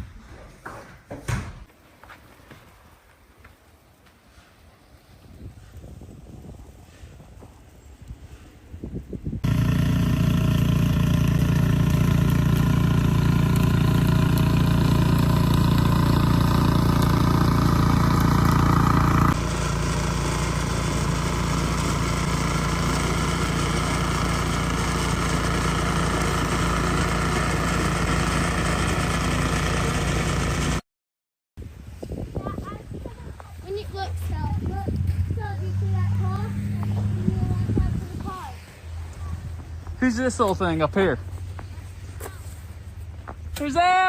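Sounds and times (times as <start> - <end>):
engine running steadily: 9.4 - 30.8, 33.7 - 43.6.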